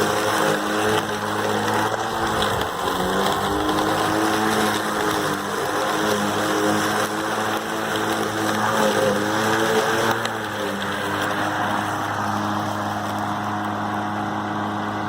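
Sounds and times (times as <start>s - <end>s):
electric lawn mower running: 0.0s - 15.0s.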